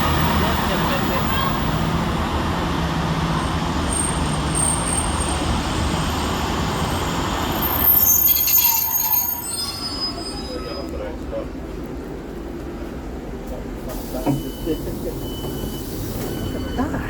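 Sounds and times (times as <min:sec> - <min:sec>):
train engine running: 0:00.0 - 0:10.0
brake and wheel squeal: 0:03.9 - 0:11.2, 0:14.2 - 0:17.0.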